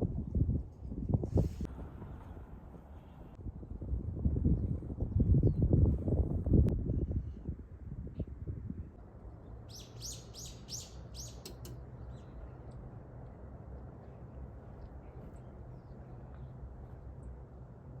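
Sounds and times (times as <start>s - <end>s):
small bird chirping: 9.7s - 12.4s
faint low rumble: 11.5s - 18.0s.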